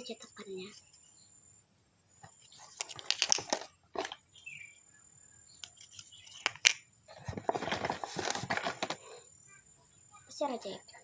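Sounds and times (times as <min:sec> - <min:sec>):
plastic toys clicking and clattering: 0:02.6 - 0:04.2, 0:05.8 - 0:09.0.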